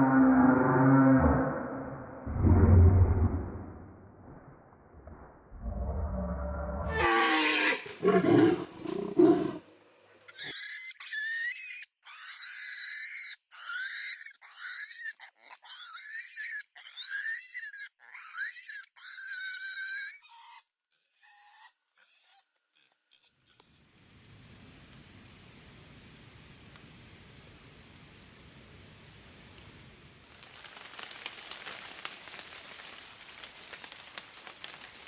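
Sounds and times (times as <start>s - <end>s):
deep animal roar: 0.0s - 3.8s, 5.6s - 9.6s.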